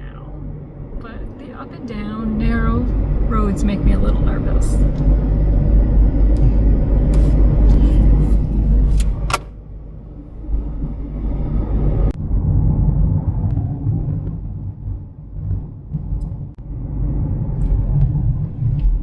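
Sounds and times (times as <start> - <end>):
car road noise rumble: 0.0 - 19.0
sharp clicks: 8.9 - 9.5.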